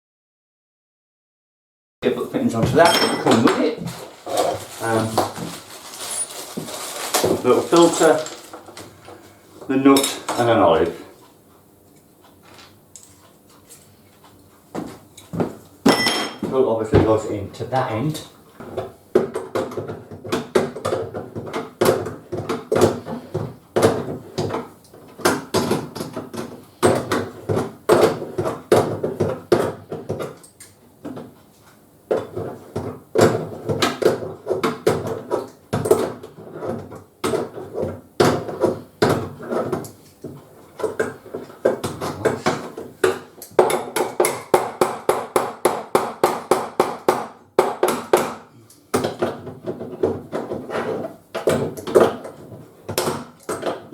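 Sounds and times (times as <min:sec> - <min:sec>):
clinks and knocks of tools: 0:02.6 - 0:08.6, 0:15.9 - 0:16.5.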